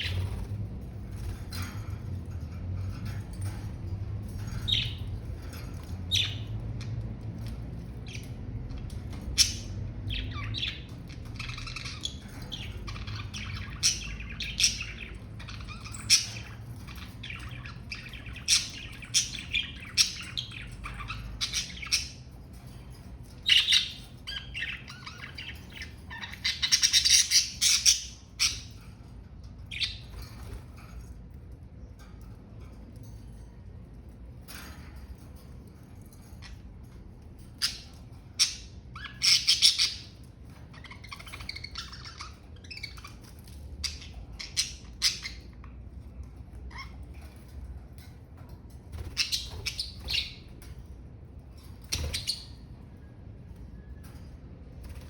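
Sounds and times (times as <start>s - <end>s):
budgerigars chirping: 0.0s - 0.5s, 4.3s - 6.9s, 9.1s - 30.6s, 37.5s - 45.7s, 49.0s - 50.7s, 51.7s - 52.7s.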